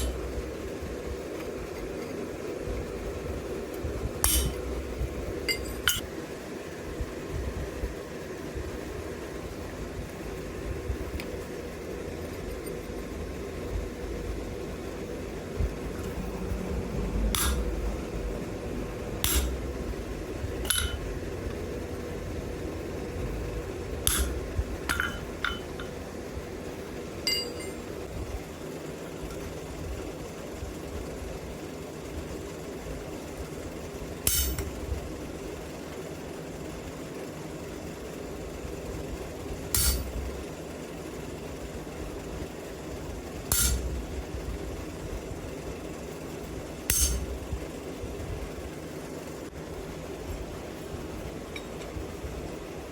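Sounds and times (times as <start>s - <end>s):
low shop hum: 0.0s - 52.9s
hammer tapping metal chisel: 4.2s - 4.6s.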